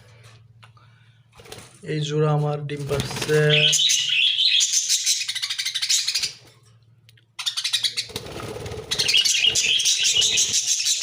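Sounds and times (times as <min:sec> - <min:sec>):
budgerigars chattering: 0:03.4 - 0:06.4, 0:07.4 - 0:08.2, 0:08.8 - 0:11.0.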